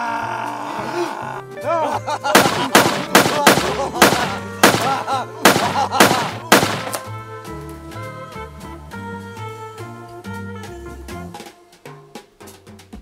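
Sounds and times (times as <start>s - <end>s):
manic laughter: 0.8s - 6.5s.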